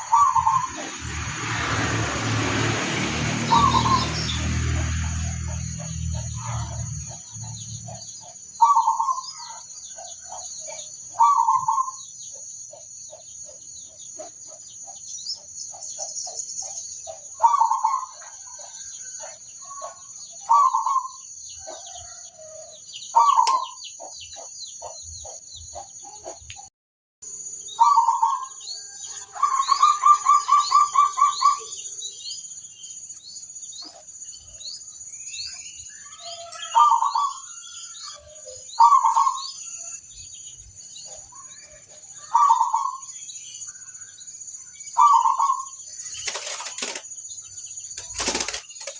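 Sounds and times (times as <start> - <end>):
dove cooing: 0.0 - 0.9, 8.6 - 9.3, 11.2 - 11.9, 38.8 - 39.4.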